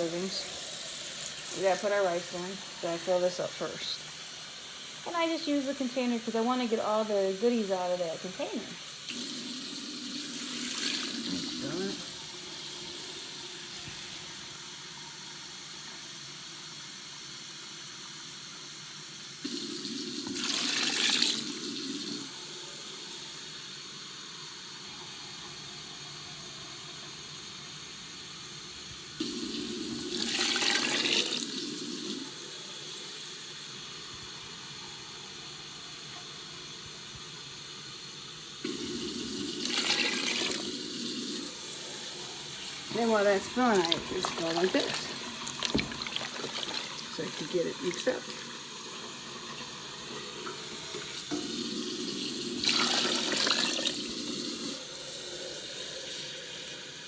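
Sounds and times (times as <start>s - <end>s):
water splashing: 42.2s - 48.6s
tap running into plastic container: 43.7s - 47.5s.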